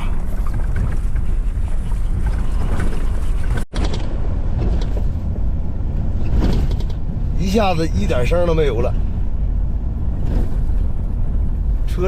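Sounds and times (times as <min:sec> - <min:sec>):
road and engine rumble: 0:00.0 - 0:12.0
wind noise: 0:00.0 - 0:12.0.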